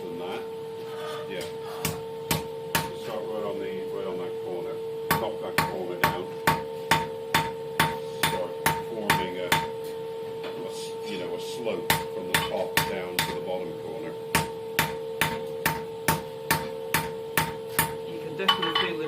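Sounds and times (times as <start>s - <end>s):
steady hum: 0.0s - 19.0s
hammer striking hot steel on anvil: 1.4s - 3.0s, 5.1s - 9.8s, 11.9s - 13.4s, 14.3s - 19.0s.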